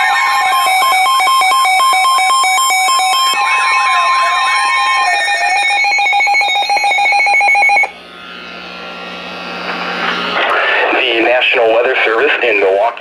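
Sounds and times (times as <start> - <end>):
rapid beeping: 0.0 - 9.6
steady alert tone: 0.0 - 9.6
warbling tone: 0.0 - 11.2
faint radio hiss and hum: 8.0 - 13.0.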